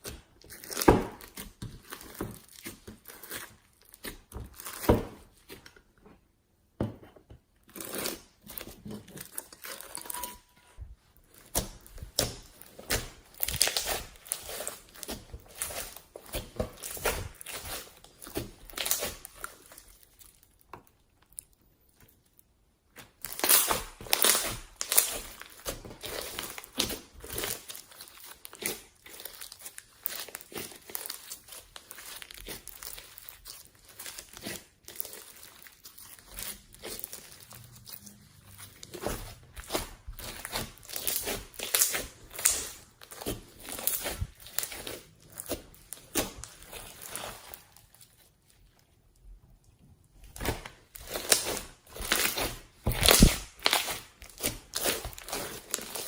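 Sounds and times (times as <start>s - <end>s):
slime crackling and popping: 11.2s - 48.4s, 50.2s - 56.0s.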